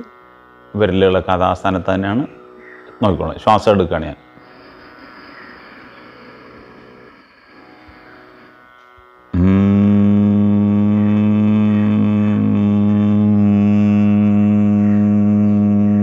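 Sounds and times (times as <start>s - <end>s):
loud steady low hum: 0.0s - 16.0s
person breathing in: 4.4s - 8.6s.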